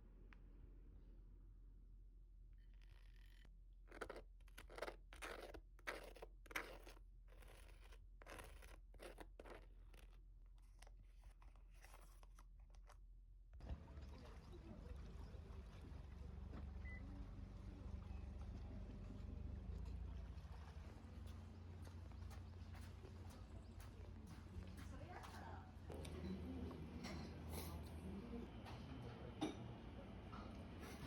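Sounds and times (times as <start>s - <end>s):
quiet crunching: 2.9s - 13.0s.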